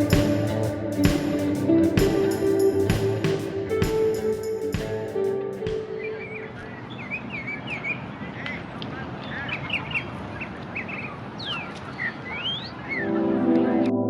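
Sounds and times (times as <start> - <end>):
birds chirping: 0.0 - 13.8
background noise: 0.0 - 14.0
rising whistled bird calls: 6.0 - 13.1.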